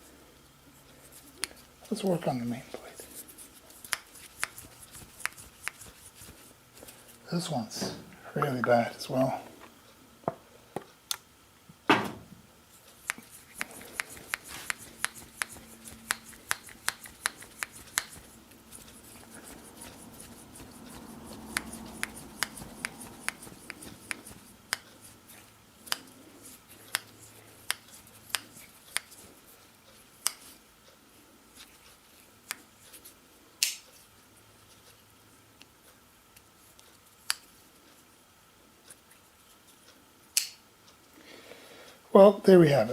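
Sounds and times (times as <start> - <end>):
soft rubbing and scraping: 17.4 - 25.5
pocketknife clicks: 40.4 - 40.6.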